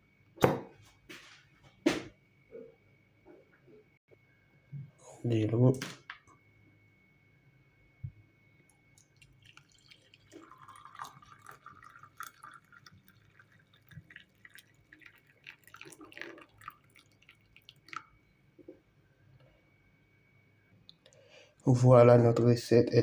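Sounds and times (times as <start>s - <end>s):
water trickling into cup: 8.8s - 18.2s
water drips: 8.9s - 18.2s.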